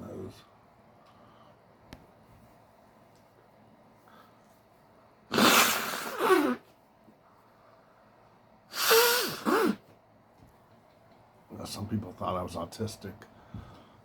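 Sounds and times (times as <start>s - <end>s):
man blowing his nose: 5.3s - 6.7s, 8.7s - 9.9s.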